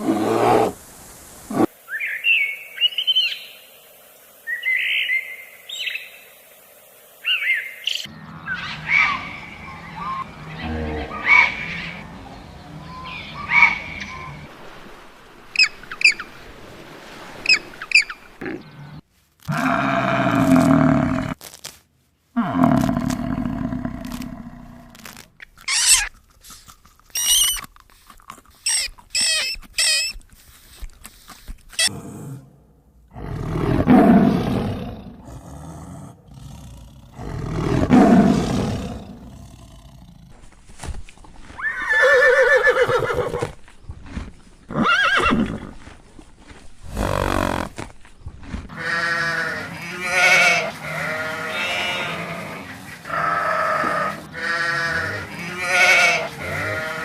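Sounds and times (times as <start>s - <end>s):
short high-pitched animal calls: 28.6s - 30.2s.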